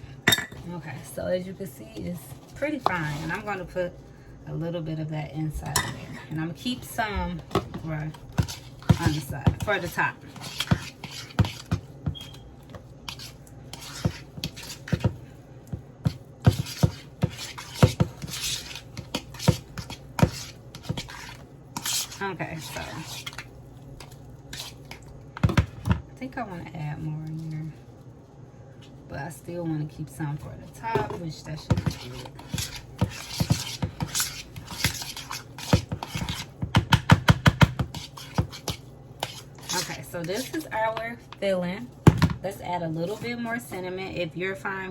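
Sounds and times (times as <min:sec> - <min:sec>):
spoon scraping bowl: 0:02.0 - 0:03.8, 0:05.7 - 0:15.3, 0:16.0 - 0:25.1, 0:30.7 - 0:36.7, 0:37.6 - 0:41.4.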